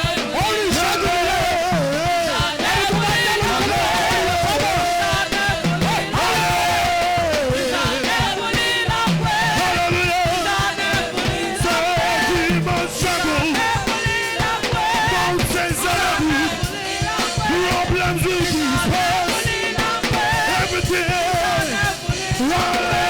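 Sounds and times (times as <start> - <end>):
choir singing: 0.0 - 23.0
live band with drums: 0.0 - 23.0.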